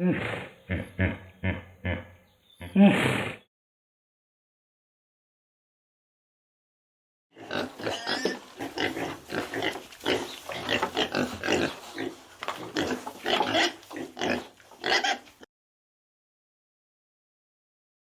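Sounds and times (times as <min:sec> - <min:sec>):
farm animals grunting: 0:00.0 - 0:03.5, 0:07.4 - 0:15.4.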